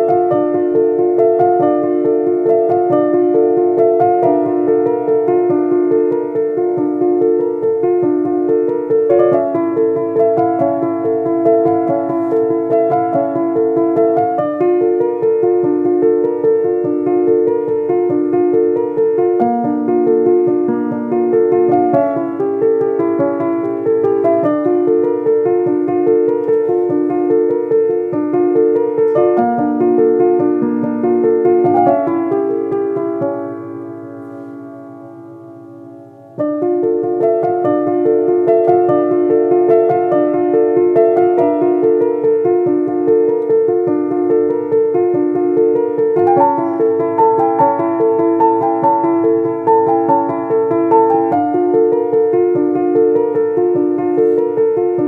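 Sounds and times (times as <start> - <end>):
gentle piano melody: 0.0 - 55.0.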